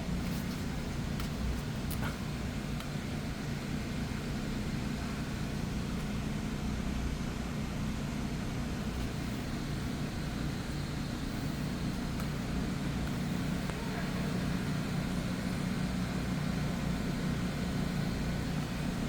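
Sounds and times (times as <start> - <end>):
heavy machinery engine droning: 8.7 - 19.0.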